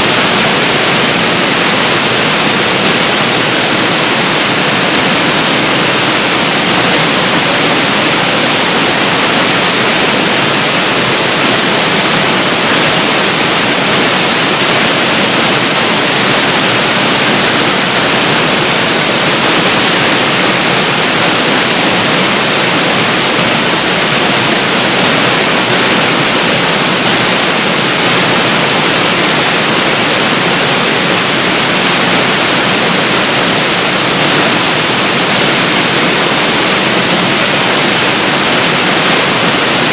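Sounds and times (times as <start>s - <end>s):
waterfall crashing into pool: 0.0s - 39.9s.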